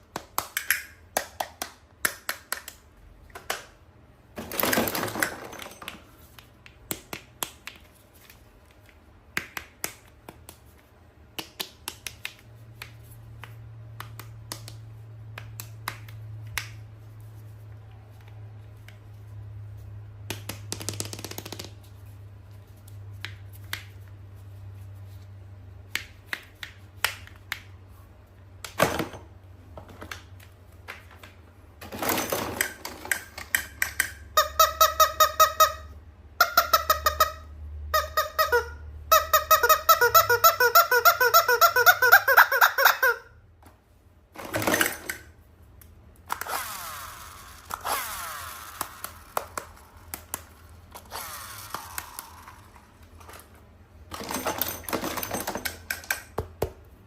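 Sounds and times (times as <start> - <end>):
toy packaging clicks and taps: 0.1 - 3.7, 20.3 - 21.8, 32.6 - 34.3, 47.4 - 53.4
toy squeaky tones: 34.3 - 43.3.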